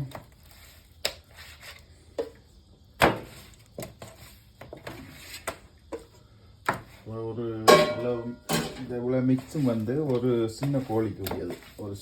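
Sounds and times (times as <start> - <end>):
knocks and clatters in a bowl: 7.7 - 8.9.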